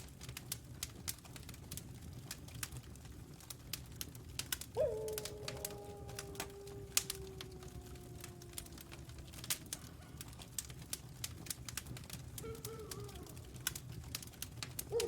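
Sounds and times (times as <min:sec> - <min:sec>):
wood fire crackling: 0:00.0 - 0:15.0
distant wolf howls: 0:04.7 - 0:15.0.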